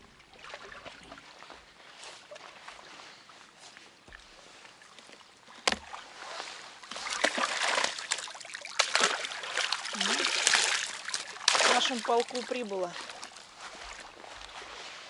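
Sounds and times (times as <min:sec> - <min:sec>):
fish splashing in water: 0:05.6 - 0:15.0.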